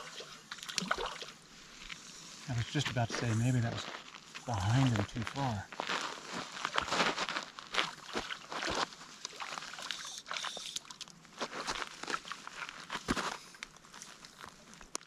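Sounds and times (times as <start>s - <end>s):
water splashing: 0.0s - 1.4s, 7.8s - 11.1s.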